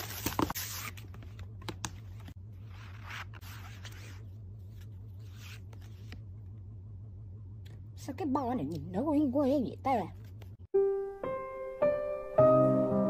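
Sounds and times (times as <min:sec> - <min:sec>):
steady low hum: 0:00.9 - 0:10.7.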